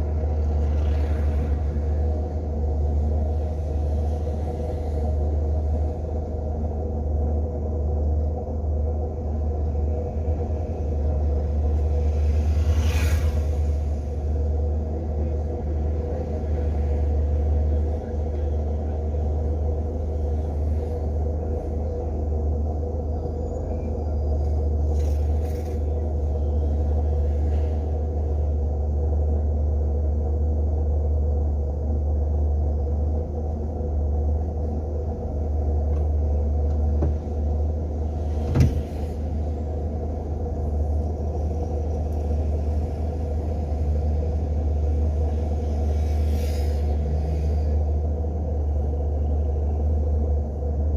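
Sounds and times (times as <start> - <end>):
car engine and road noise: 0.0 - 50.9
short sharp thump: 38.4 - 39.0.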